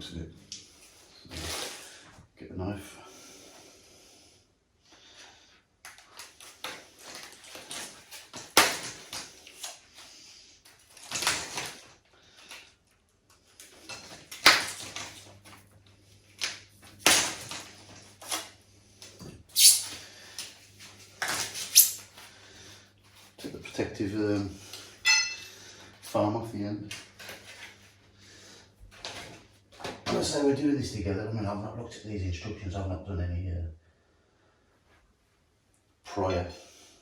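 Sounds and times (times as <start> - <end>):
knife cutting and scraping plastic: 19.6 - 20.0, 21.5 - 22.1.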